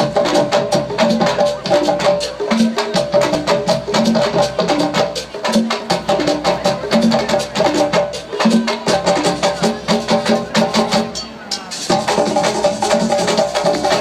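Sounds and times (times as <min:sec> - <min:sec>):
percussion ensemble drumming: 0:00.0 - 0:14.0.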